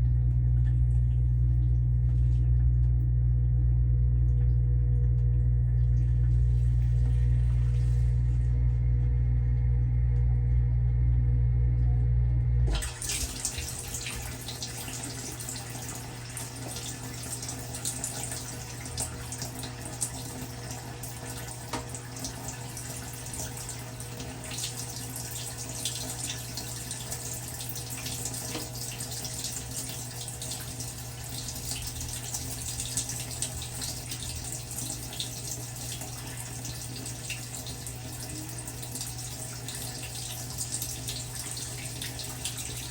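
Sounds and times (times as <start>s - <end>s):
loud low hum: 0.0s - 15.5s
dishwasher motor hum: 0.0s - 42.9s
water spraying and splashing: 12.7s - 19.1s.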